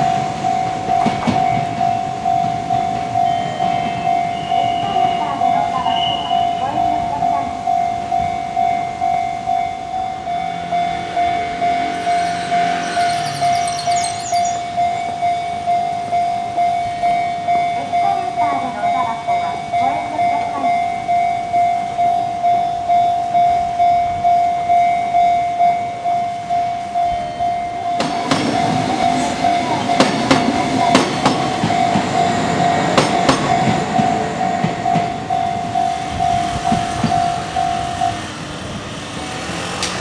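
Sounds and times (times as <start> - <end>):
level-crossing warning bell: 0.0 - 39.7
electric train passing: 0.0 - 40.0
wheels clacking over rail joints: 27.7 - 40.0.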